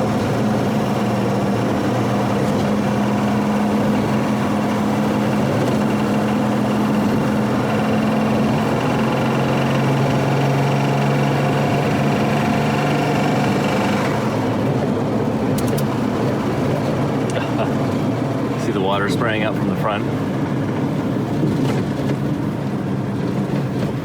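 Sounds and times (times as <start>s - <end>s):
car engine running: 0.0s - 24.0s.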